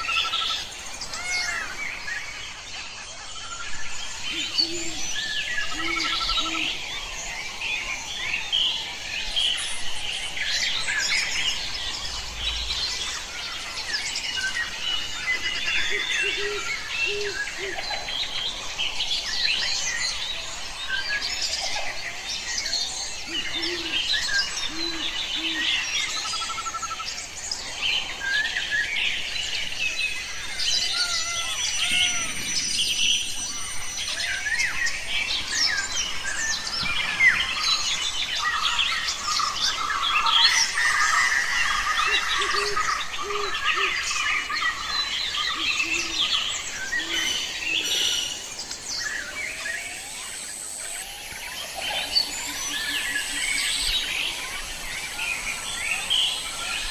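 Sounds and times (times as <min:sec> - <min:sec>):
small birds chirping: 0:00.0 - 0:56.9
dove cooing: 0:04.3 - 0:06.7, 0:23.3 - 0:24.0.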